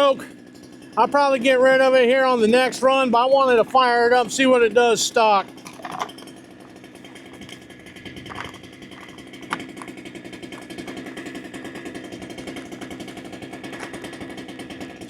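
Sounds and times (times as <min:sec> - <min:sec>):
chainsaw idling: 0:00.0 - 0:15.0.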